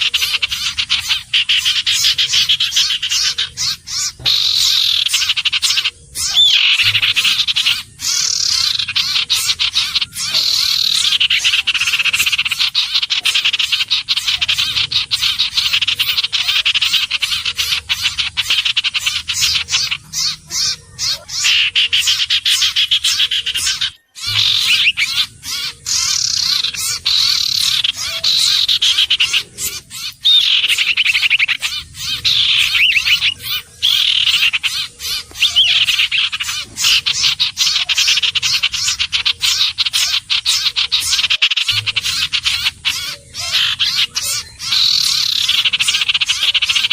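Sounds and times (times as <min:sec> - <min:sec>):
bird chirping and trilling: 0:00.0 - 0:46.9.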